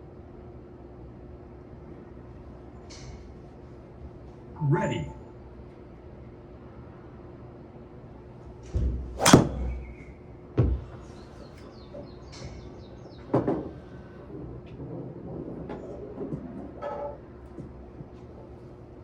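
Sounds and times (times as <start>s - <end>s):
dull thumps: 9.2s - 9.9s
golf club striking ball: 9.2s - 9.9s.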